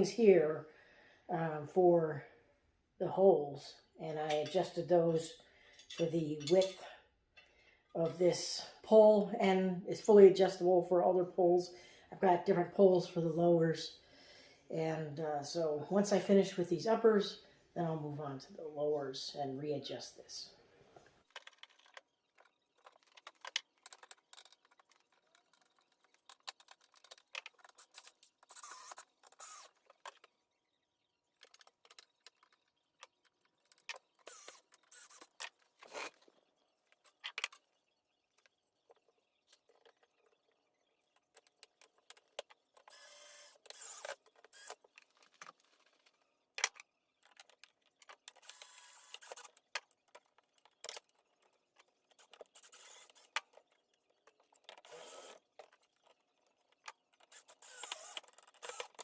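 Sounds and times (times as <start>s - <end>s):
scraping rasping bursts: 52.2s - 53.5s.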